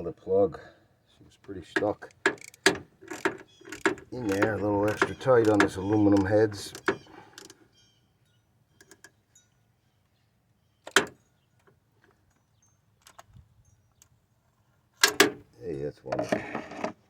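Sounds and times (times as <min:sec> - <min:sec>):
socket wrench clicking: 0:02.1 - 0:07.6.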